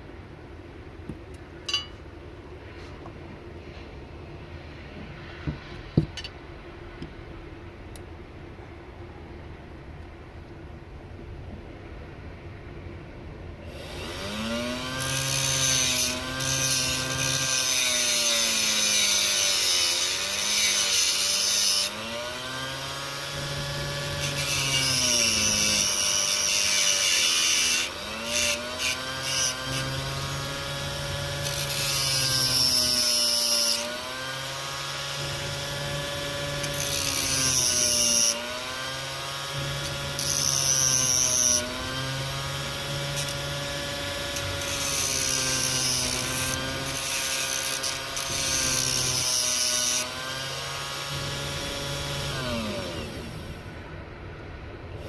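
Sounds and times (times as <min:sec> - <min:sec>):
electric rotary tool whining: 0:13.7 - 0:53.8
grinding hiss: 0:39.5 - 0:53.8.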